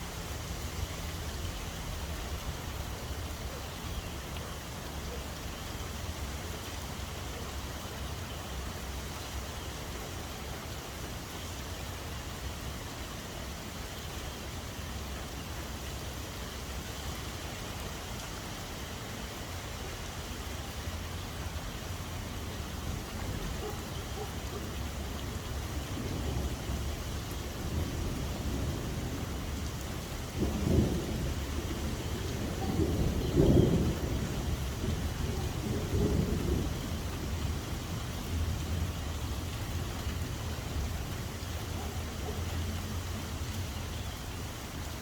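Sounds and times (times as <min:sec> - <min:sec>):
steady rain: 0:00.0 - 0:45.0.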